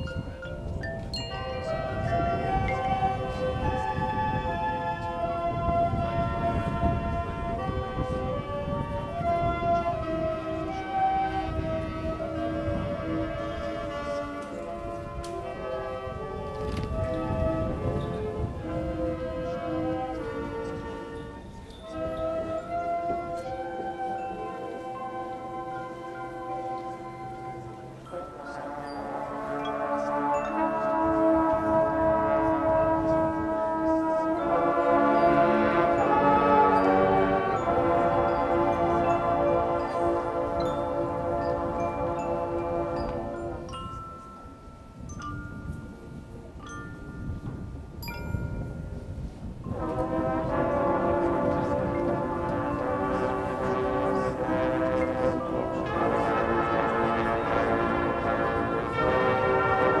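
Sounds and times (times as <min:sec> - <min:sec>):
mallet percussion ringing: 0:00.0 - 0:03.4, 0:34.4 - 0:49.9
marching band sustained chords: 0:00.0 - 1:00.0
bell-like ringing tones: 0:20.7 - 0:31.4.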